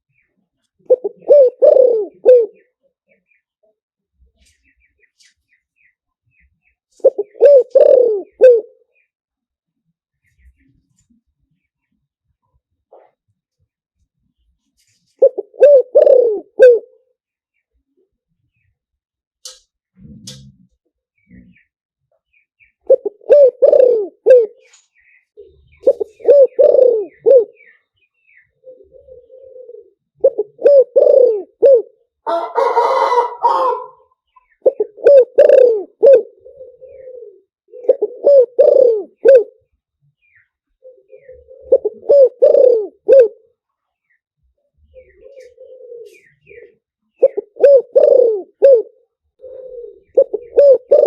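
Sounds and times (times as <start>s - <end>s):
dove cooing: 0.8s - 3.2s, 7.0s - 8.9s, 15.1s - 17.1s, 22.9s - 24.7s, 25.4s - 39.7s, 40.4s - 43.6s, 44.6s - 51.0s.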